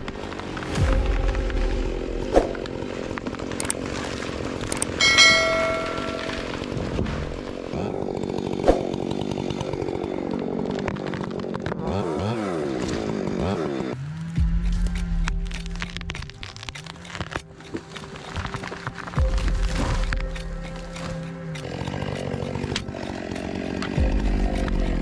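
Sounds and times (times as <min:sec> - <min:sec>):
chainsaw running and cutting: 0:00.0 - 0:25.0
brief ringing note: 0:05.0 - 0:06.7
sharp clicks: 0:14.3 - 0:24.0.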